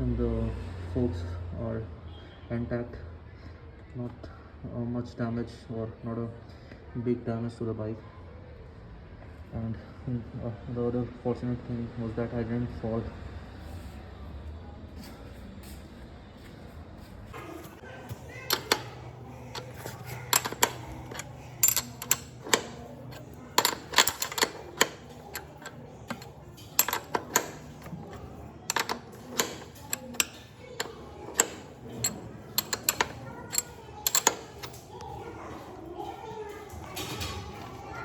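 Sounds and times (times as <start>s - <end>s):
metallic clinks and knocks: 17.4s - 35.3s.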